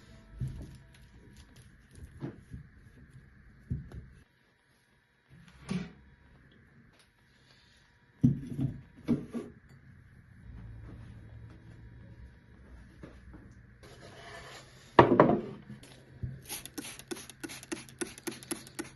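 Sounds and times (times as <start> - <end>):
household knocks and clunks: 15.0 - 15.7.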